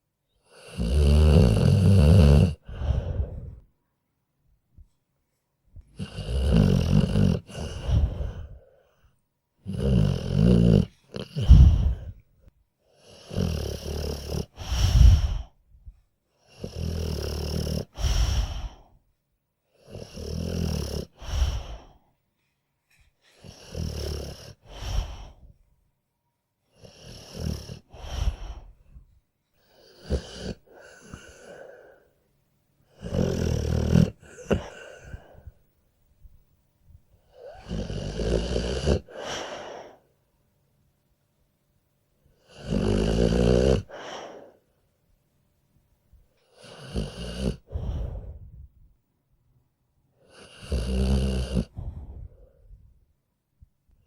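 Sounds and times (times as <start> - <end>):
dog snoring: 0.4 - 3.6, 5.8 - 8.7, 9.6 - 12.3, 13.0 - 15.6, 16.5 - 19.0, 19.7 - 22.0, 23.3 - 25.6, 26.7 - 29.0, 29.6 - 32.0, 32.9 - 35.6, 37.3 - 40.0, 42.4 - 44.6, 46.4 - 48.7, 50.2 - 52.8.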